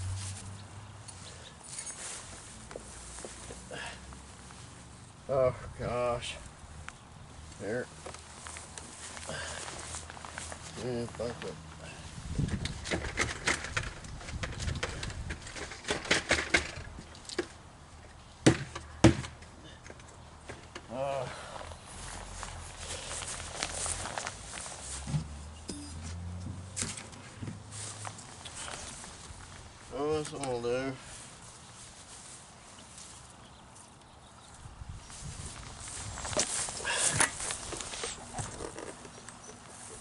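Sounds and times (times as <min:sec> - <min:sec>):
faint footsteps: 0:01.1 - 0:05.0, 0:06.7 - 0:11.6, 0:21.4 - 0:30.0, 0:35.1 - 0:40.0
objects clattering and rustling: 0:12.4 - 0:17.6, 0:35.8 - 0:40.0.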